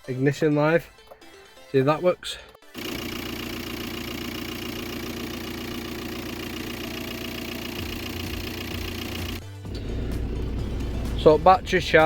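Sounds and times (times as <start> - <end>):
car engine idling: 2.9 - 12.0.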